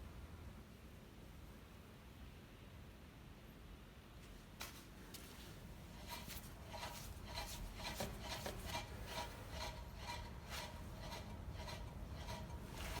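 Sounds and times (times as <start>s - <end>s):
wheel bearing rasping rub: 5.8s - 13.0s.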